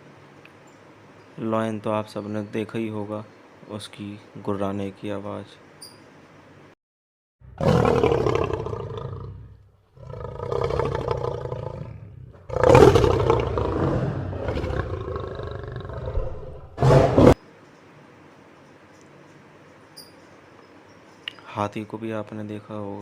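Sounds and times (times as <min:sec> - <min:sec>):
lion growling: 0:07.6 - 0:17.4.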